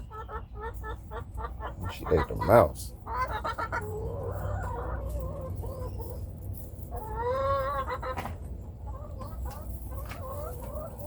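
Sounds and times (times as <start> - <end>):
hen clucking: 0.0 - 11.0
low steady rumble: 2.8 - 11.0.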